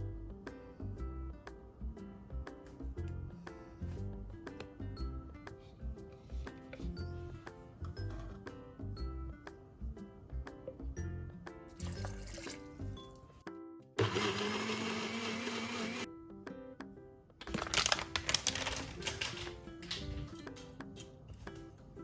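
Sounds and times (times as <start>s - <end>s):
electric blender motor: 14.0s - 16.1s.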